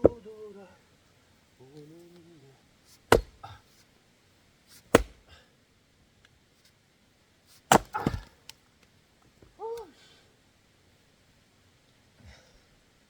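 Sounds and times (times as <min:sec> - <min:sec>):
axe chopping firewood: 0:03.0 - 0:03.6, 0:04.9 - 0:05.3, 0:07.7 - 0:08.6.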